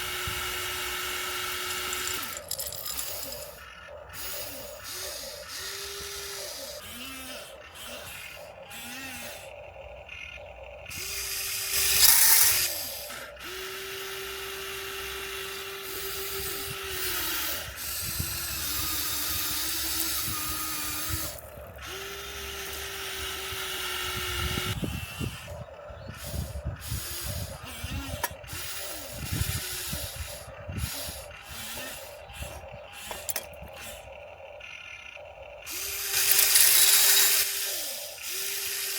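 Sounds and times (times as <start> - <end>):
electric motors whining: 0.0 - 38.9
gravel scraping and clattering: 1.6 - 3.6, 35.7 - 37.5.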